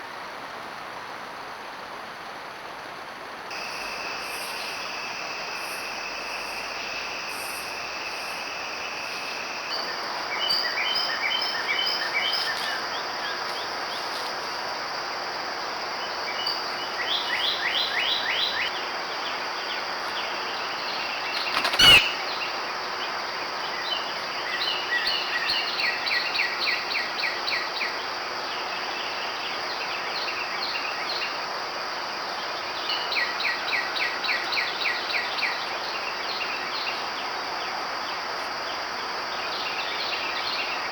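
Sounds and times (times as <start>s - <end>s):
steady hiss: 0.0s - 40.9s
bird singing high notes: 21.3s - 22.4s
sharp click: 21.4s - 22.2s.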